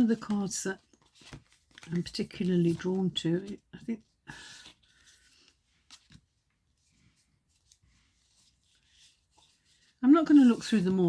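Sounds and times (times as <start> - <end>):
cards clicking and rustling: 0.0 - 3.6.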